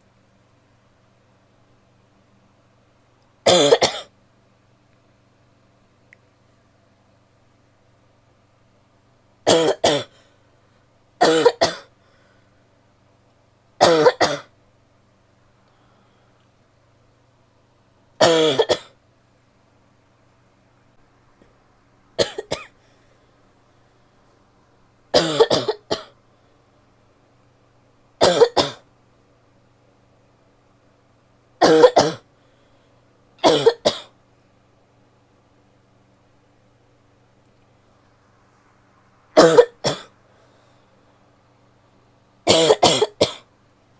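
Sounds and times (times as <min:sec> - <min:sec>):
woman coughing: 0:03.5 - 0:04.1, 0:09.5 - 0:10.1, 0:11.2 - 0:11.9, 0:13.8 - 0:14.5, 0:18.2 - 0:18.9, 0:22.2 - 0:22.7, 0:25.2 - 0:26.2, 0:28.2 - 0:28.8, 0:31.6 - 0:32.2, 0:33.4 - 0:34.1, 0:39.4 - 0:40.1, 0:42.5 - 0:43.5.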